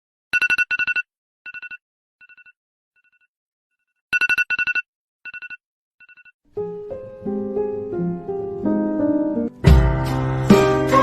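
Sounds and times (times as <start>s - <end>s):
telephone ringtone trilling: 0.3s - 3.3s, 4.1s - 6.4s.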